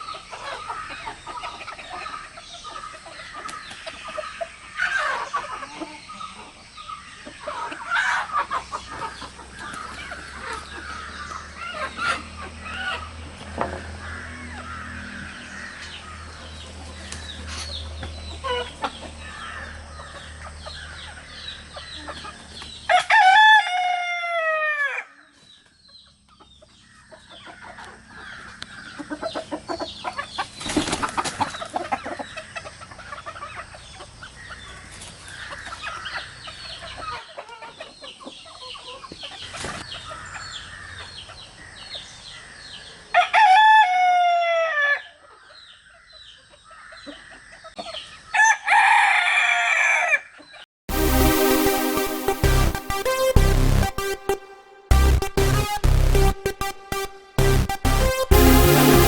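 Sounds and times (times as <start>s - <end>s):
rooster crowing: 22.9s - 25.0s.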